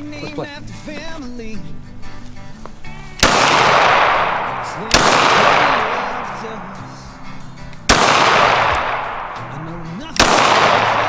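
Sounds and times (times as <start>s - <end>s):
background music: 0.0s - 11.0s
pistol shots with echo: 2.9s - 11.0s.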